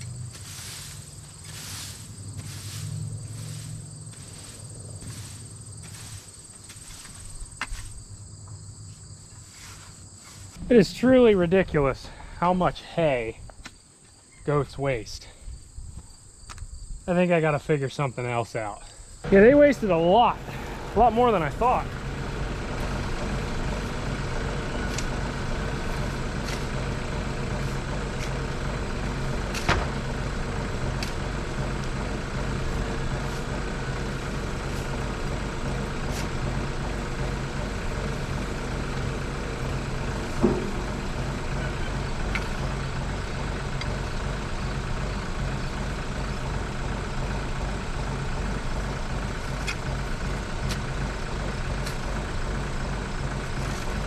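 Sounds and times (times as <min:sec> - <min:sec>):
diesel tractor engine running: 0:00.0 - 0:08.8, 0:10.6 - 0:13.3, 0:19.2 - 0:54.0
clicks and knocks: 0:40.4 - 0:41.2.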